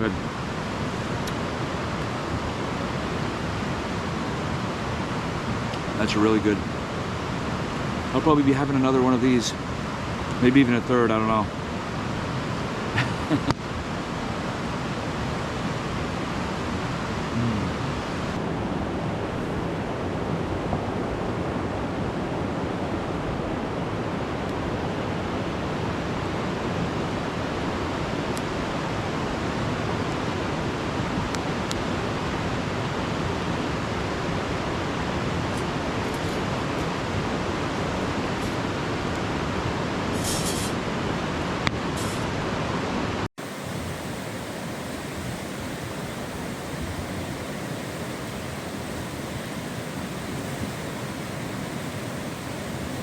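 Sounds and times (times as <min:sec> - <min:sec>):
river rushing: 0:43.4 - 0:53.0.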